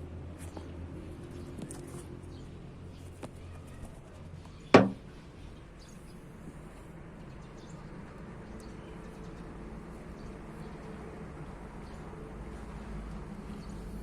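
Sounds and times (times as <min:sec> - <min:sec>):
sharp knock: 0:04.8 - 0:05.0.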